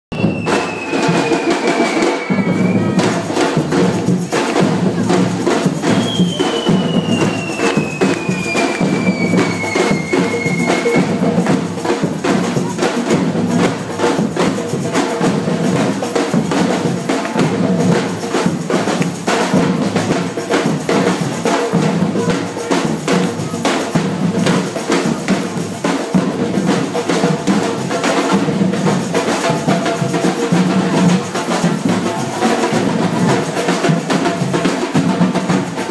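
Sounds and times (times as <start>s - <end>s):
high falling whistle: 0.1s - 3.0s, 6.0s - 11.1s.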